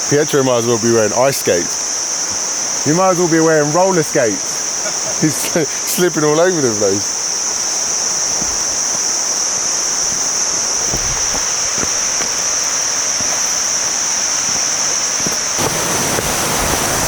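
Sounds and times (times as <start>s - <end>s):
high-pitched insect drone: 0.0s - 17.0s
waterfall rushing: 8.2s - 17.0s.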